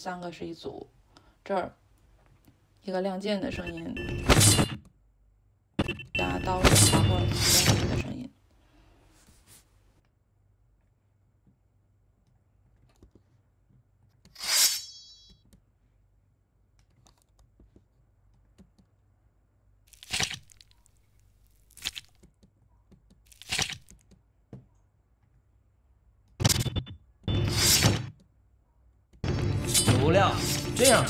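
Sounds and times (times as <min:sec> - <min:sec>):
sword being drawn: 0:06.8 - 0:07.8, 0:14.4 - 0:15.3, 0:27.4 - 0:28.1, 0:29.3 - 0:31.0
blade swishes and slicing hits: 0:29.3 - 0:31.0.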